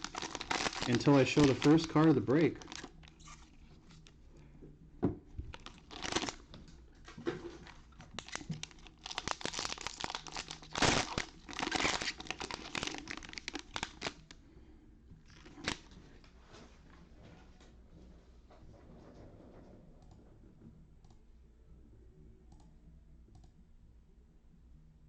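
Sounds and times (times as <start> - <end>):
card wrappers tearing and crinkling: 0.0 - 4.1, 5.5 - 6.5, 7.5 - 14.3, 15.3 - 15.9.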